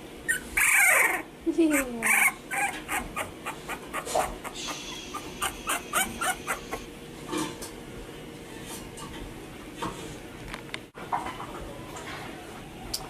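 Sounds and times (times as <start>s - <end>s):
puppies whimpering: 0.3s - 6.9s.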